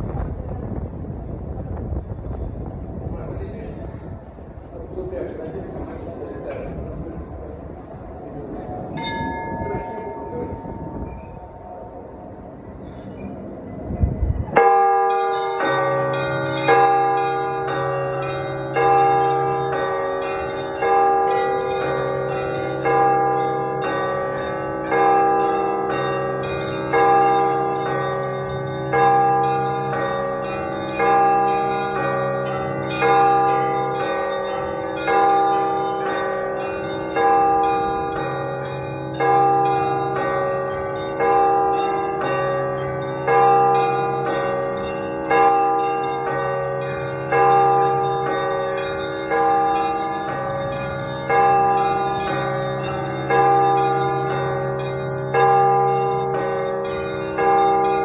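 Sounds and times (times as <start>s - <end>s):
small church bells pealing: 5.0s - 12.8s, 14.5s - 58.0s
heavy bell strokes: 8.1s - 11.8s, 14.6s - 58.0s
deep bell humming: 14.5s - 58.0s.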